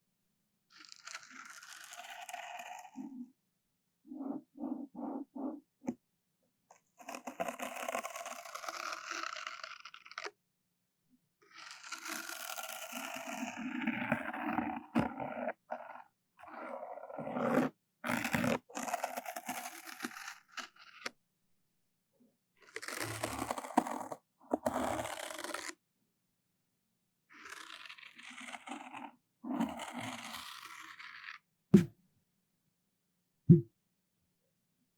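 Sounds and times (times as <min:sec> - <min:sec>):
close scraping and rubbing: 0:04.1 - 0:05.7, 0:14.5 - 0:20.2.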